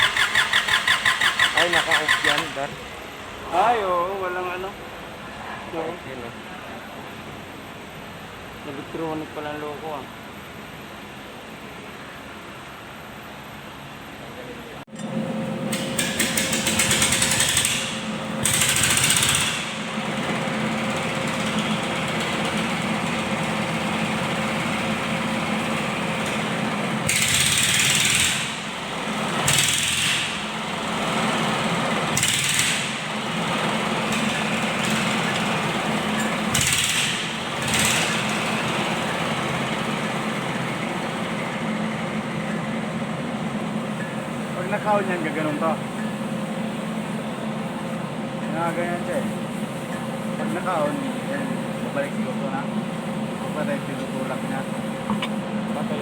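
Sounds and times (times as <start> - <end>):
diesel engine running with knock: 0.0 - 2.7, 14.9 - 47.7, 48.4 - 56.0.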